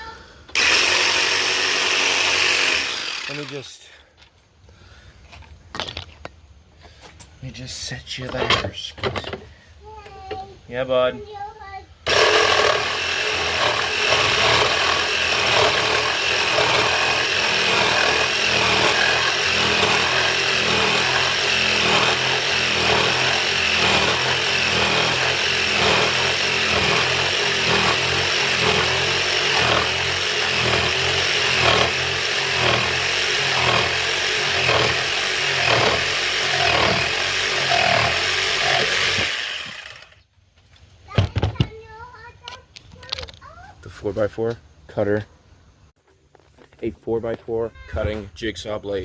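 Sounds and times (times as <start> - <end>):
jigsaw sawing through wood: 0.5 - 3.8, 12.0 - 40.2.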